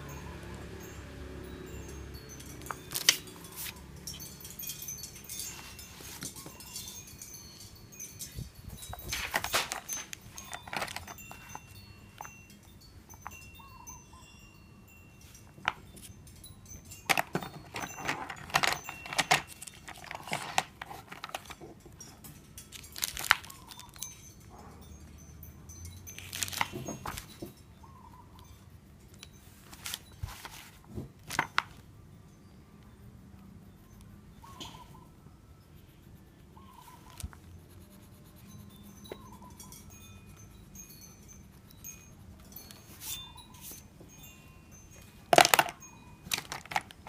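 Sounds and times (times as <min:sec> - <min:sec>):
pencil clicks and taps: 0:09.1 - 0:11.5
pencil scratching on paper: 0:35.7 - 0:39.7.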